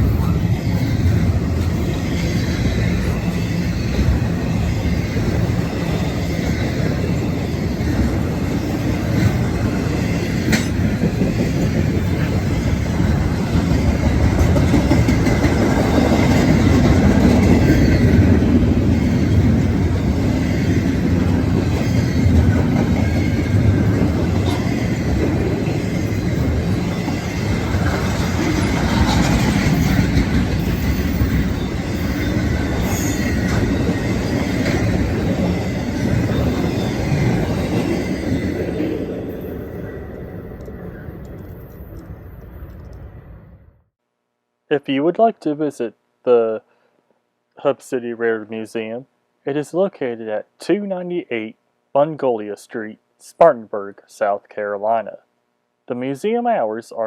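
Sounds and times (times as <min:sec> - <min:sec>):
train wheels clattering: 0:00.0 - 0:39.6.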